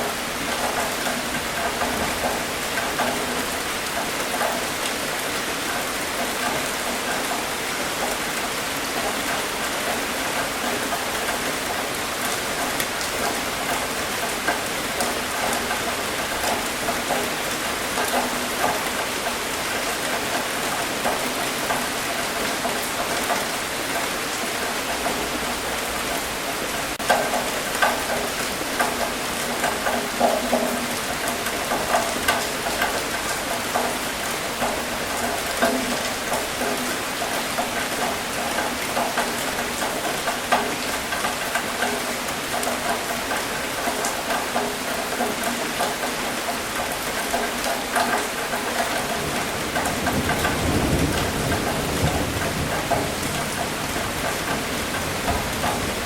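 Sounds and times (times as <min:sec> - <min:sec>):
rain pattering: 0:00.0 - 0:56.0
louder raindrop hits: 0:26.8 - 0:56.0.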